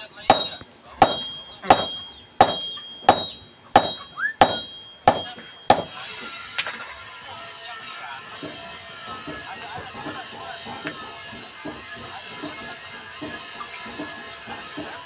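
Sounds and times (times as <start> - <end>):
hammer striking metal: 0.3 - 6.0.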